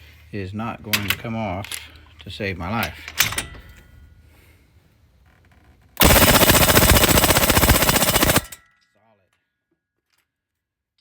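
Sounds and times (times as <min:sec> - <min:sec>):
impact wrench hammering: 0:06.0 - 0:08.5.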